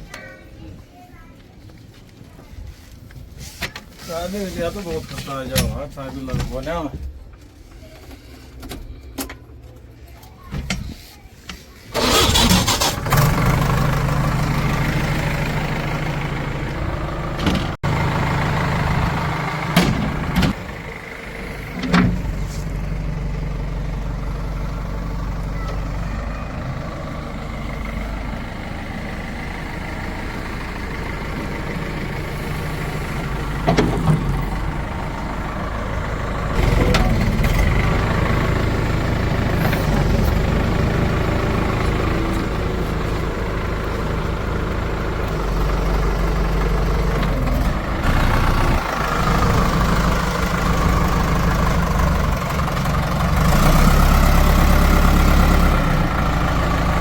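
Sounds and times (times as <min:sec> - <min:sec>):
heavy diesel engine running: 0:11.9 - 0:57.0.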